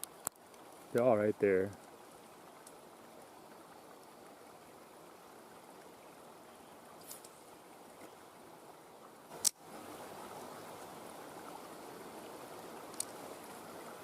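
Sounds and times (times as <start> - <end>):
small tick: 0.0 - 0.6, 2.6 - 2.8, 12.9 - 13.2
water running over rocks: 0.0 - 14.0.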